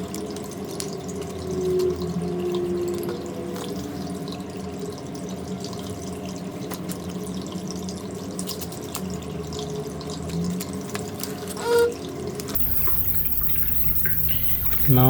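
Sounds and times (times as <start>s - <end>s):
steady low hum: 12.6s - 15.0s.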